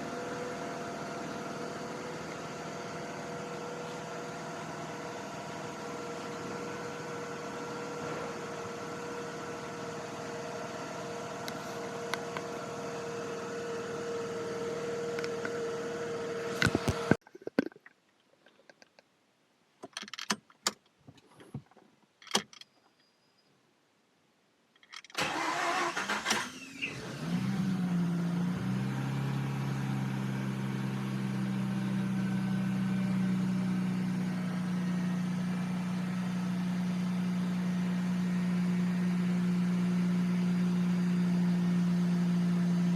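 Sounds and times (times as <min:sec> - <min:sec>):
car engine cranking and idling: 0:00.0 - 0:17.2, 0:25.2 - 0:42.9.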